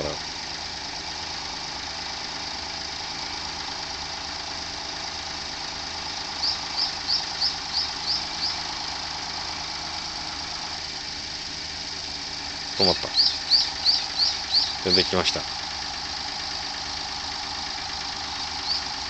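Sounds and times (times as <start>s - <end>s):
car engine running with rattle: 0.0s - 19.0s
bird chirping: 6.3s - 8.7s, 12.8s - 15.5s, 18.2s - 19.0s.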